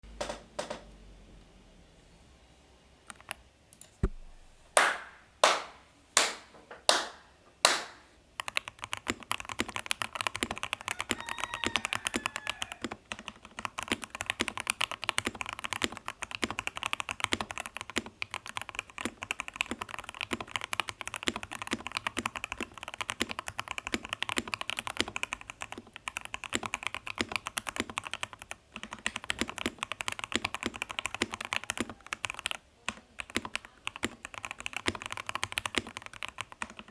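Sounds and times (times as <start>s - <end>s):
mechanical keyboard typing: 8.4s - 36.9s.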